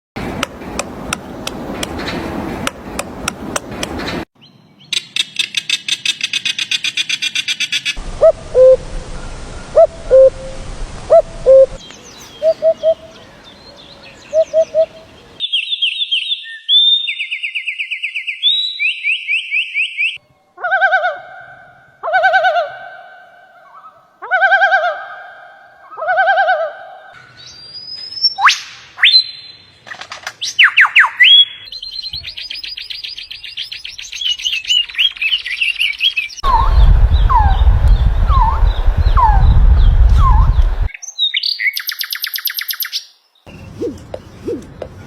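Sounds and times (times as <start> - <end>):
birds calling and singing: 11.1 - 20.2, 27.0 - 45.0.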